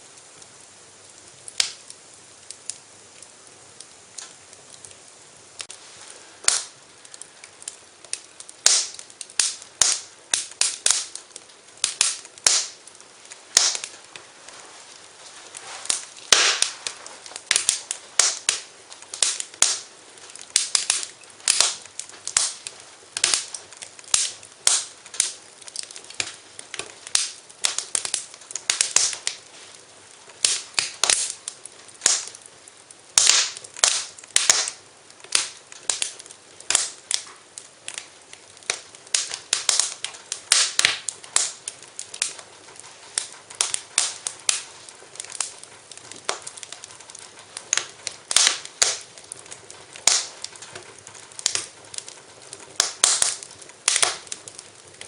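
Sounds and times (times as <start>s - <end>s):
soft steady hiss: 0.0s - 55.0s
wood fire crackling: 0.0s - 55.0s.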